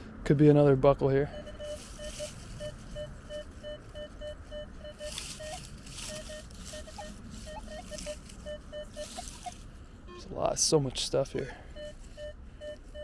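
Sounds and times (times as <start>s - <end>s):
metal detector beeping: 1.2s - 13.0s
higher wavering detector tones: 1.3s - 10.4s, 11.2s - 13.0s
soil rustling and scraping: 1.6s - 9.7s.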